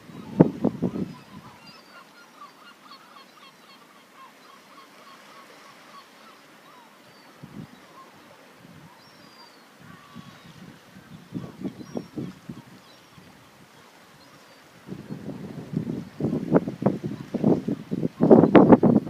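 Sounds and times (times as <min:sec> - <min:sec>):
birds chirping: 0:00.1 - 0:15.2.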